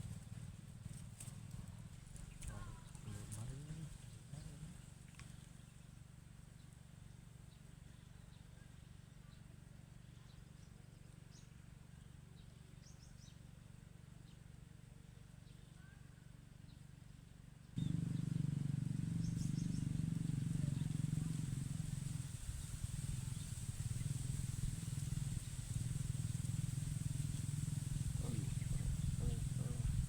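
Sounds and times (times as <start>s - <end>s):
steady low hum: 0.0s - 15.6s, 16.3s - 30.0s
faint high bird chirps: 15.4s - 16.8s, 17.8s - 18.4s, 19.2s - 21.2s
loud low rumble: 27.8s - 30.0s.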